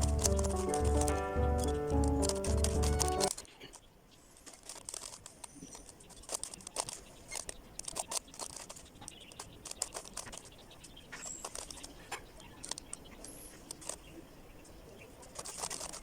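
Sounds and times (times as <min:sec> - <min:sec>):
puzzle cube clicking as twisted: 0:00.0 - 0:03.4.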